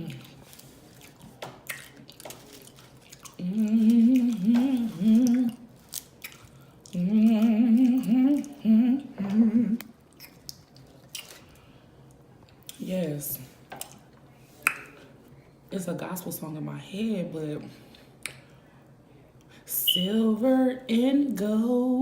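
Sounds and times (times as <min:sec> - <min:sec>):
woman humming: 0:03.4 - 0:05.6, 0:07.0 - 0:09.9.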